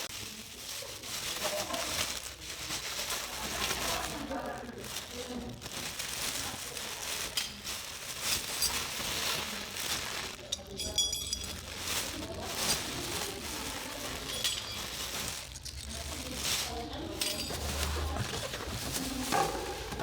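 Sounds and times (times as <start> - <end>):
packaging rustling: 0.0 - 10.5, 11.4 - 20.0
metallic clinks: 10.5 - 11.7.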